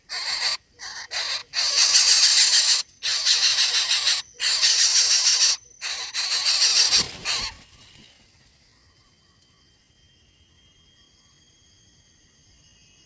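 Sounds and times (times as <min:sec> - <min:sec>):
nestling bird hissing begging calls: 0:00.0 - 0:07.6.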